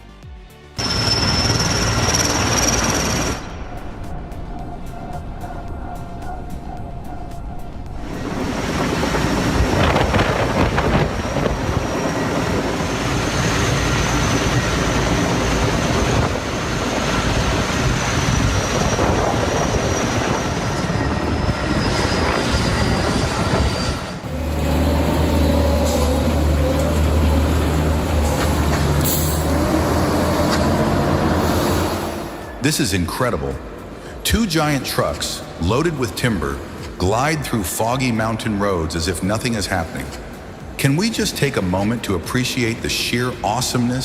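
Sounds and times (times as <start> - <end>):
deep engine drone: 0.8 - 32.6
machinery squealing whine: 0.8 - 32.6.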